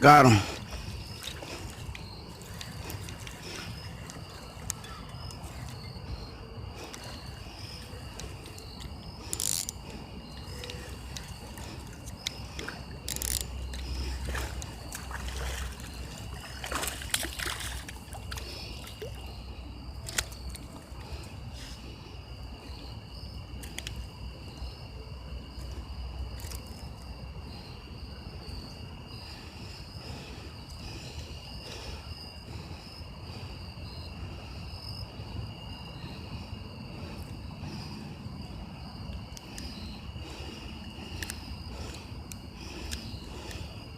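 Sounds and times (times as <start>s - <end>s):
insect chirring: 0.0s - 43.9s.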